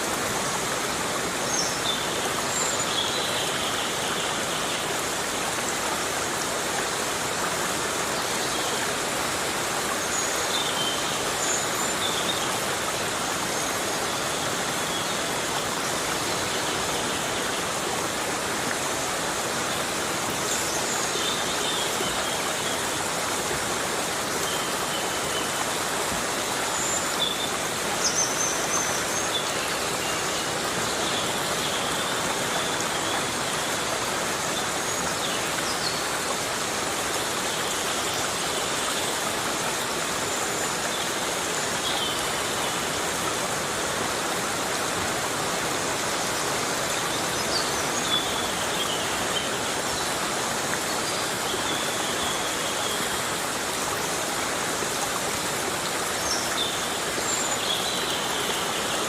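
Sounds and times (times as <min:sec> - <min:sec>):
heavy rain on a forest: 0:00.0 - 0:59.0.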